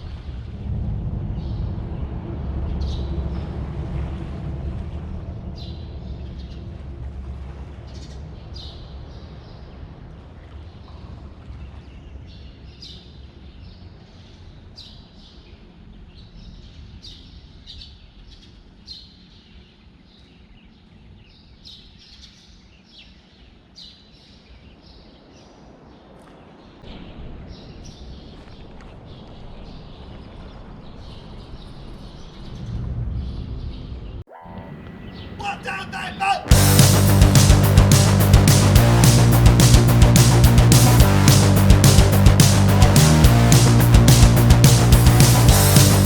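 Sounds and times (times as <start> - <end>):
low rumble: 0.0 - 8.6, 36.5 - 46.0.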